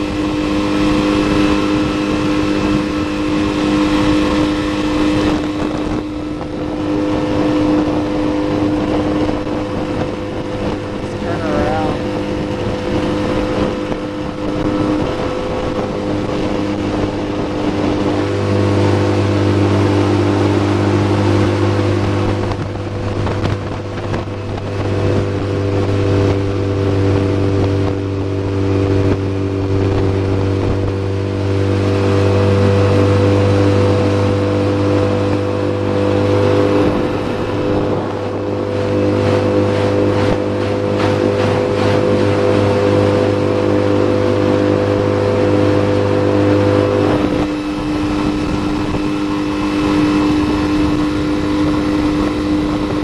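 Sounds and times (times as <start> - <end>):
outboard motor running: 0.0 - 53.0.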